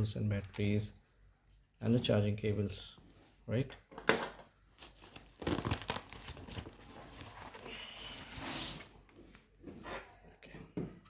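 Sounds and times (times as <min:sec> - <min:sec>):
bag rustling and crinkling: 0:04.7 - 0:08.7.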